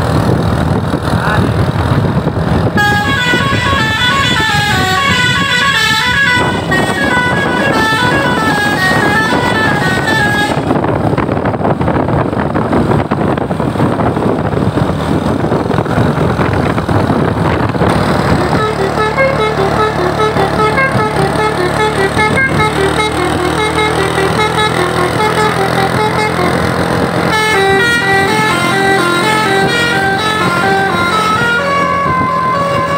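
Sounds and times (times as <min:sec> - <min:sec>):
loud rough rushing noise: 0:00.0 - 0:32.9
bus multi-tone horn tune: 0:02.6 - 0:11.8, 0:17.9 - 0:32.9.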